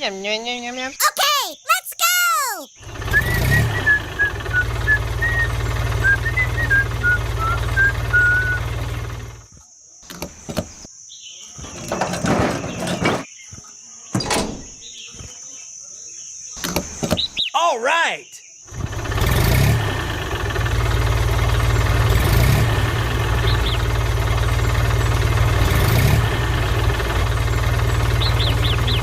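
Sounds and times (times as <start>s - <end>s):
small engine running: 2.8s - 9.5s, 18.7s - 29.0s
birds chirping: 10.0s - 18.7s, 23.2s - 25.2s, 26.6s - 29.0s
short clattering noises: 11.6s - 13.3s.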